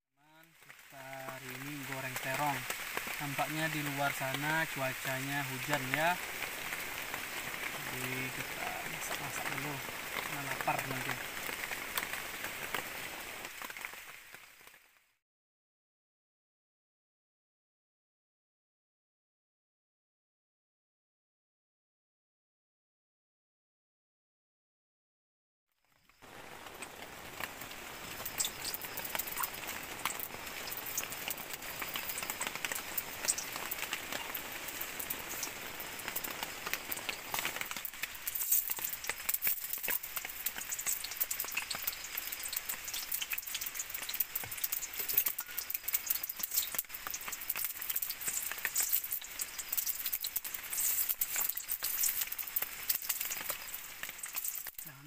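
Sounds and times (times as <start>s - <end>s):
food sizzling in hot oil: 0.2s - 14.8s, 25.9s - 55.0s
rain falling: 0.2s - 15.2s, 25.8s - 55.0s.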